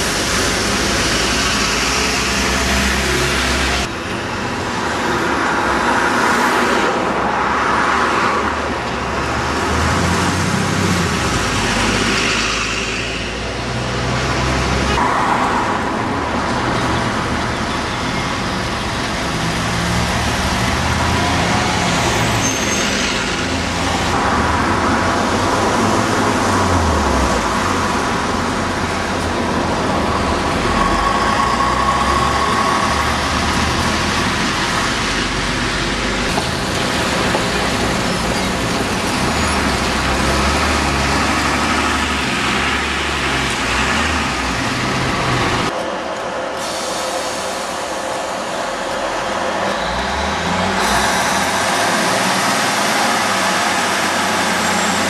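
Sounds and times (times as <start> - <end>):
road vehicles passing: 0.0 - 55.0.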